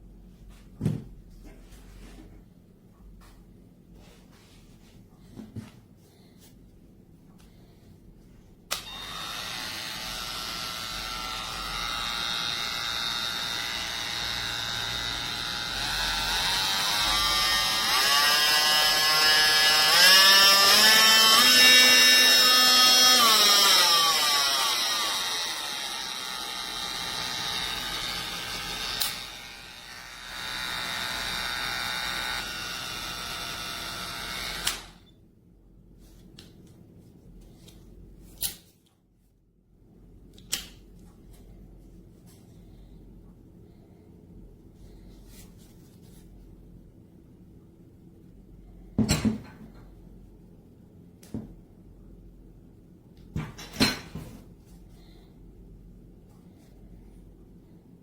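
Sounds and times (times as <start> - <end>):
oscillating multi-tool running: 8.8 - 35.0.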